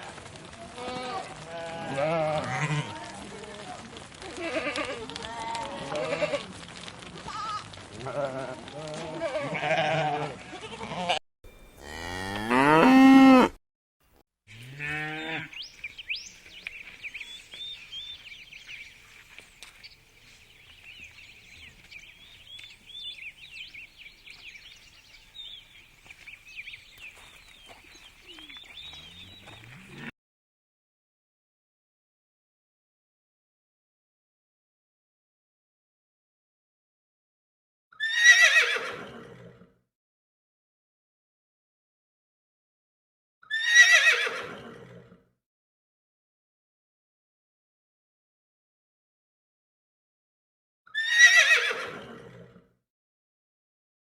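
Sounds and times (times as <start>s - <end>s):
farm animal bleating: 0.8s - 3.3s, 4.3s - 6.6s, 7.3s - 13.6s, 14.5s - 15.6s, 28.3s - 30.1s
loud animal call rising in pitch: 11.8s - 13.6s.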